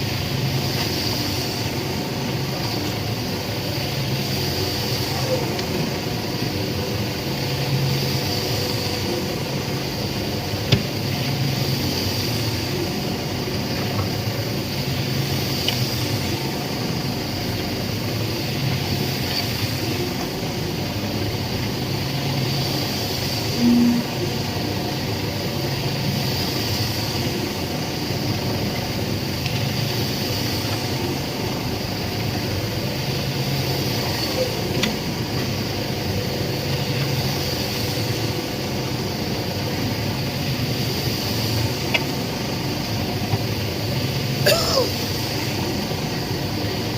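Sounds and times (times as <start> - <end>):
short low tone: 23.6 - 24.2.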